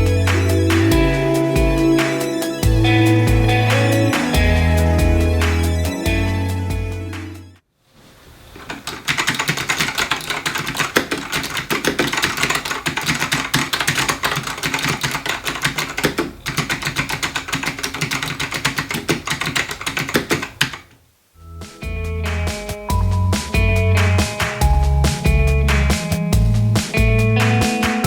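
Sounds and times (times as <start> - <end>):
fast mechanical keyboard typing: 8.7 - 20.9.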